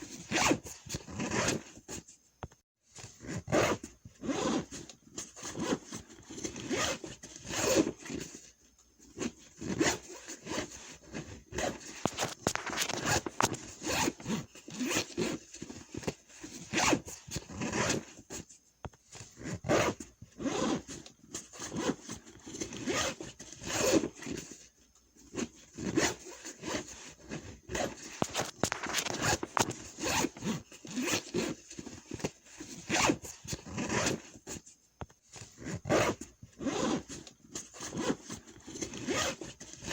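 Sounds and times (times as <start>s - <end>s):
backpack zippers zipping: 0.0s - 1.8s, 3.1s - 8.3s, 9.1s - 18.3s, 19.4s - 24.5s, 25.3s - 34.6s, 35.4s - 39.9s.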